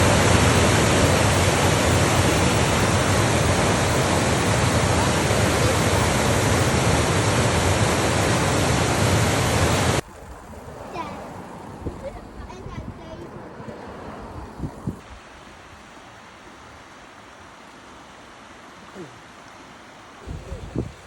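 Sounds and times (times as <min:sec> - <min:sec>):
fast-flowing water rushing: 0:00.0 - 0:10.0.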